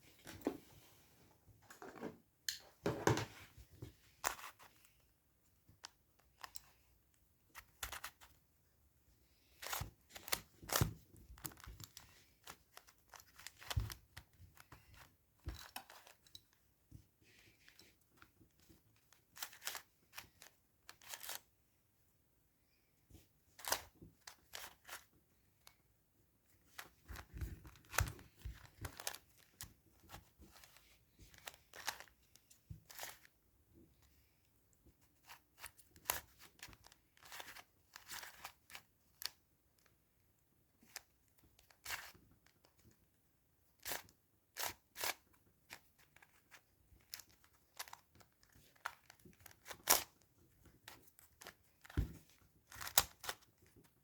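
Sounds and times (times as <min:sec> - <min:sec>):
plastic and cardboard crinkling: 0:09.5 - 0:16.2, 0:26.6 - 0:33.3.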